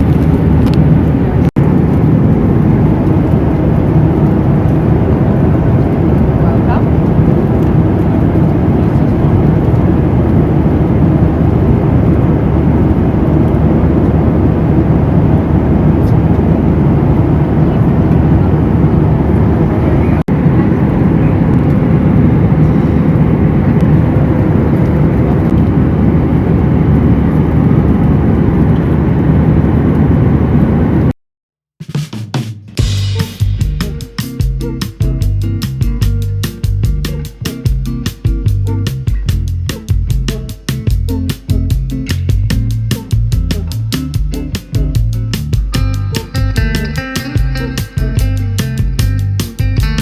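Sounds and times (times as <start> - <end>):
jet airliner cabin drone: 0.0 - 31.1, 36.4 - 50.0.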